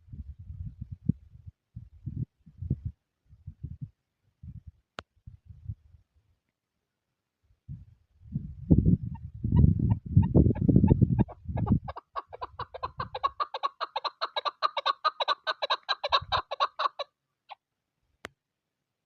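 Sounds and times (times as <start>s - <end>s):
wind rumble on microphone: 0.0s - 6.4s, 7.4s - 13.4s, 16.1s - 16.4s
partridge clucking call: 11.2s - 17.6s.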